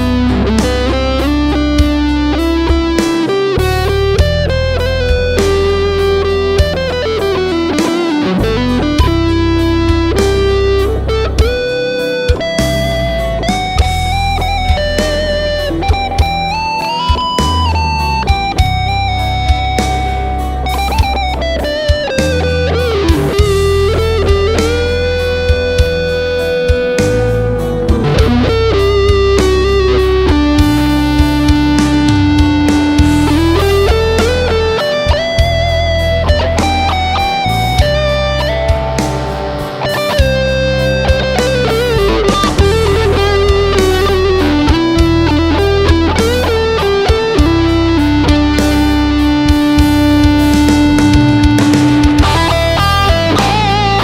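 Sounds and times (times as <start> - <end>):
electric guitar lead with vibrato: 0.0 - 54.0
low backing music: 0.0 - 54.0.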